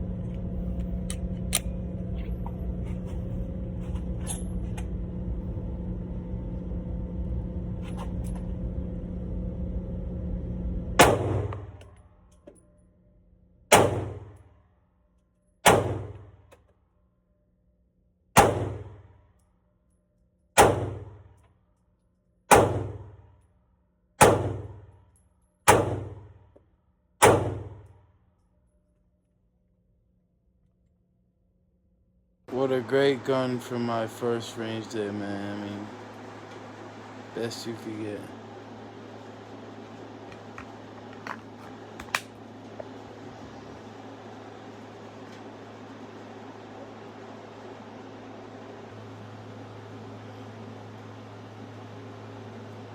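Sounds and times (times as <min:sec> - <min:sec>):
steady low hum: 0:00.0 - 0:16.6, 0:17.3 - 0:52.9
pistol shots: 0:11.0 - 0:11.7, 0:13.7 - 0:14.3, 0:15.6 - 0:16.2, 0:18.4 - 0:19.0, 0:20.6 - 0:21.1, 0:22.5 - 0:23.1, 0:24.2 - 0:24.8, 0:25.7 - 0:26.2, 0:27.2 - 0:27.8.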